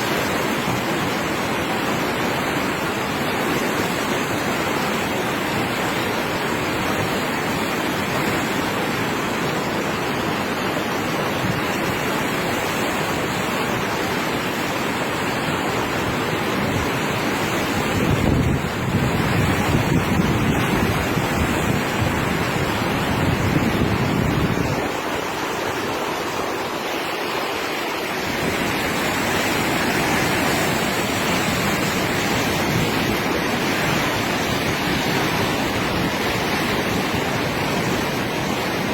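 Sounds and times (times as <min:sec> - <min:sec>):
river floodwater rushing: 0:00.0 - 0:38.9
wind buffeting microphone: 0:15.4 - 0:38.9.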